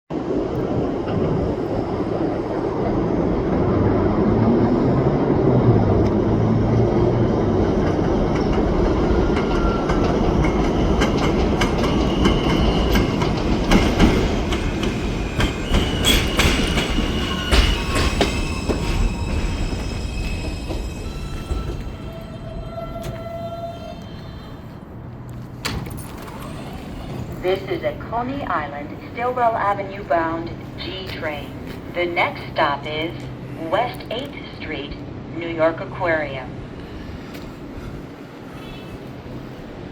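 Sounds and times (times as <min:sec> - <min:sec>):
subway train rumble: 0:00.1 - 0:39.9
high wheel squeals: 0:15.2 - 0:24.8.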